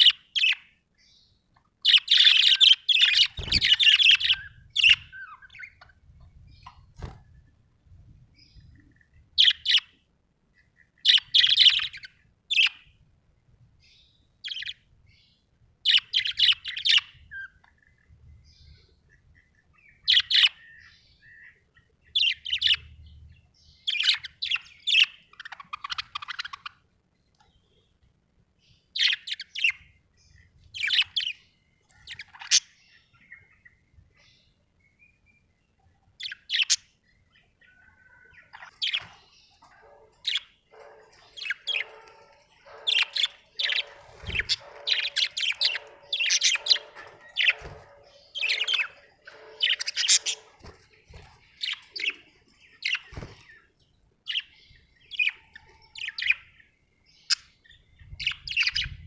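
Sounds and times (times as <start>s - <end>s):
budgerigar chirping: 1.8s - 5.9s, 10.6s - 12.8s, 37.7s - 50.9s
low chattering warble: 39.6s - 51.5s.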